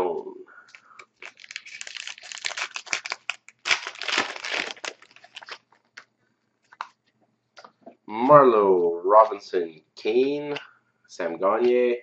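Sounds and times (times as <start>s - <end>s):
foil wrapper crinkling and tearing: 0.7s - 6.1s.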